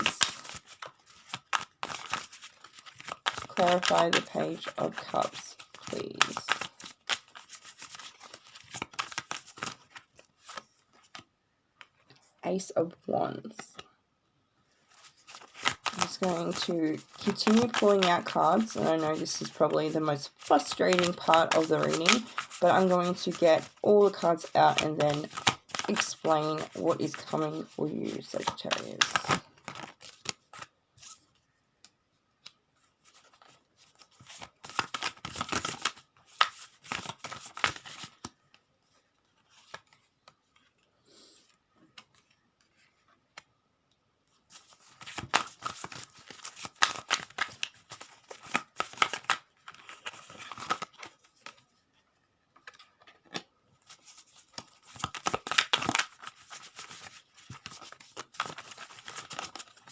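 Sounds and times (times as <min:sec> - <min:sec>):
cards being shuffled: 0:00.0 - 0:12.2, 0:14.9 - 0:31.2, 0:31.8 - 0:38.6, 0:44.5 - 0:51.6, 0:52.6 - 0:59.9.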